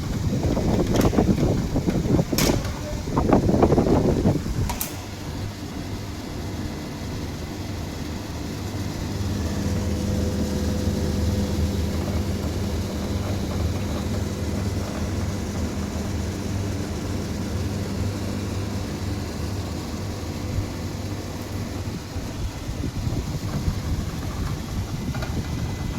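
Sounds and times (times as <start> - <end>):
air conditioner humming: 0.0 - 25.9
click: 4.7 - 5.0.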